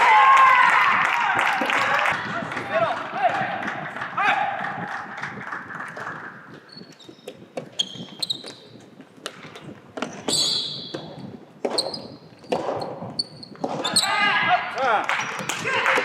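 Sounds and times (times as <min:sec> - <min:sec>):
sneaker squeaks on court floor: 0:06.6 - 0:14.1.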